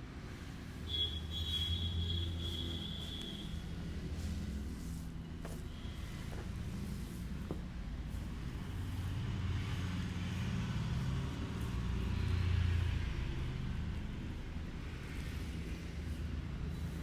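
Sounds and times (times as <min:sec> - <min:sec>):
vehicle engine rumbling past: 0:07.9 - 0:17.0.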